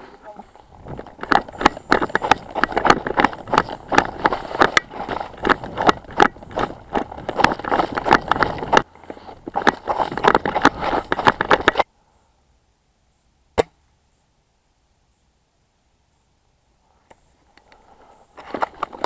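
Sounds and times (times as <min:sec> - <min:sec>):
footsteps on rough ground: 0:00.0 - 0:11.9, 0:17.8 - 0:19.0
gear rattling: 0:00.7 - 0:11.8.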